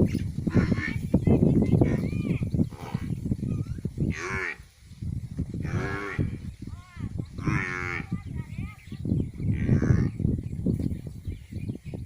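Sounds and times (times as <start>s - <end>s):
animal calling: 5.6s - 6.4s, 7.3s - 8.3s, 9.5s - 10.2s.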